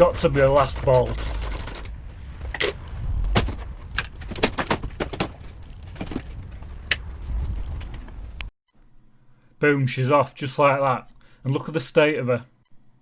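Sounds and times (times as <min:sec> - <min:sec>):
low rumble: 0:00.0 - 0:04.3.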